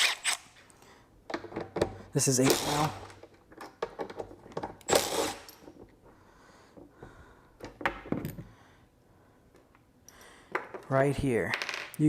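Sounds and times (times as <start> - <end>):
tools clicking and knocking: 1.3 - 6.0, 10.5 - 10.9.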